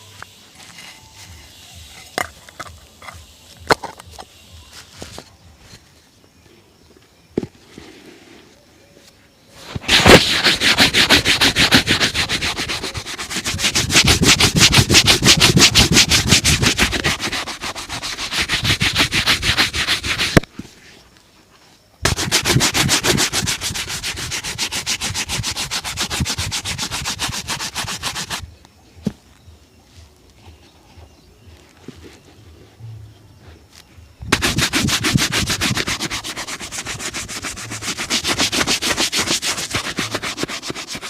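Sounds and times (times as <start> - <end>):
brush rubbing a shoe: 9.7 - 20.5, 22.0 - 28.4, 34.3 - 41.0.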